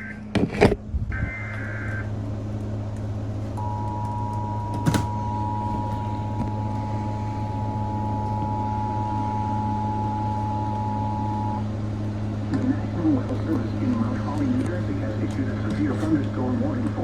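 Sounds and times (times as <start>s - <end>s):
low electrical hum: 0.0s - 17.0s
two-tone attention signal: 3.6s - 11.7s.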